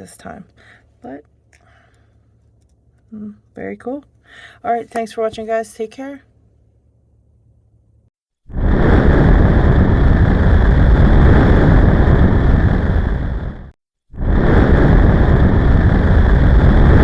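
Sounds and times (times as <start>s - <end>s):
loud rushing noise: 8.5s - 17.0s.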